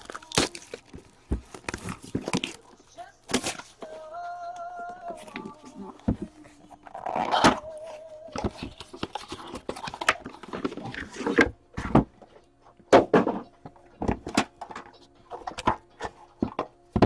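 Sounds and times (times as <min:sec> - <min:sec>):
trading cards being handled: 0:00.0 - 0:12.8.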